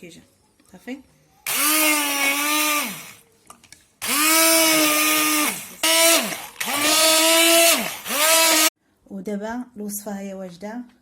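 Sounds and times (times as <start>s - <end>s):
electric blender motor whine: 1.5s - 3.2s, 4.0s - 8.7s.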